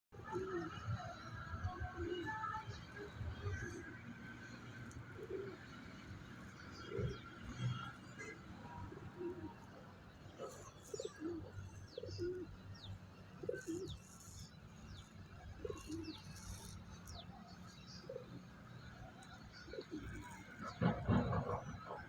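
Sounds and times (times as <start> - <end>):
pigeons cooing: 3.4 - 17.2, 17.8 - 18.4, 19.0 - 22.0.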